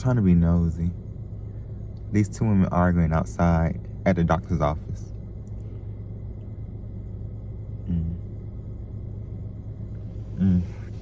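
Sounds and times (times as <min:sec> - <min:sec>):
car engine idling: 0:00.0 - 0:11.0
faint voice: 0:10.4 - 0:10.9.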